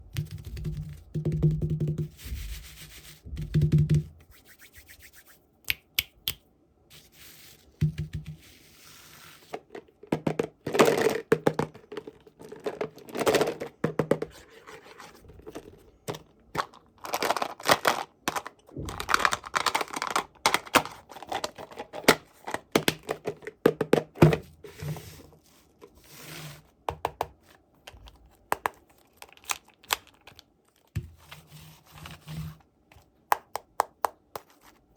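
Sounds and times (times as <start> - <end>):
packaging tearing and crinkling: 16.6 - 22.2.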